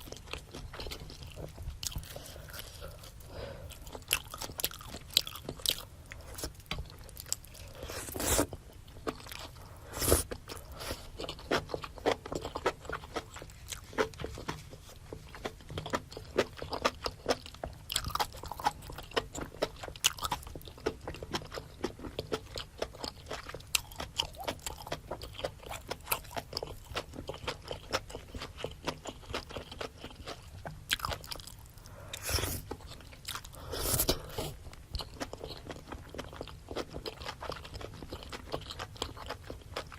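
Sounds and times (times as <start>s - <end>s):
wet chewing and smacking: 0.0s - 39.9s
food bites and crunches: 15.3s - 39.9s.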